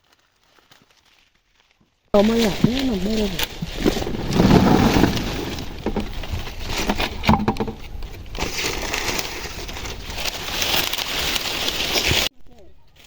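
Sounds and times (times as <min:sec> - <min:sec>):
dry leaves rustling: 0:00.0 - 0:13.0
maize cobs snapping off: 0:02.2 - 0:12.3.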